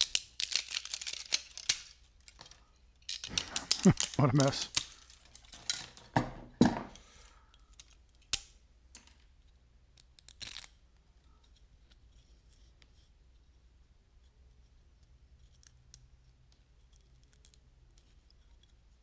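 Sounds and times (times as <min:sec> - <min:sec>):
plastic pieces clicking and snapping: 0:00.0 - 0:06.1, 0:09.9 - 0:10.8.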